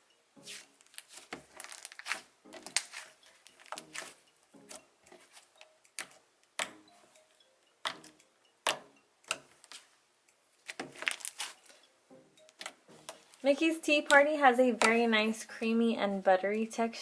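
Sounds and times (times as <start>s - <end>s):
slime squished in hands: 0.5s - 4.8s.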